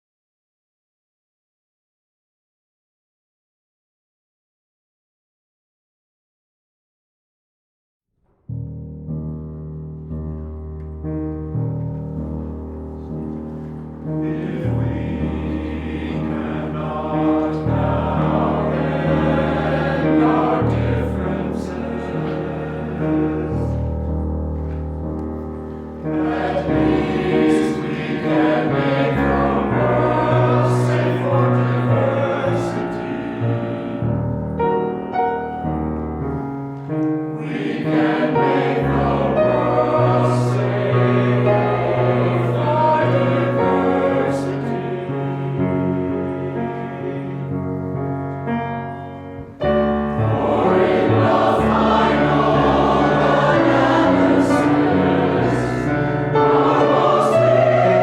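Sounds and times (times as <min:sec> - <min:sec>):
choir singing: 0:12.5 - 0:25.2, 0:25.8 - 0:35.7, 0:37.3 - 0:48.0, 0:49.4 - 0:58.0.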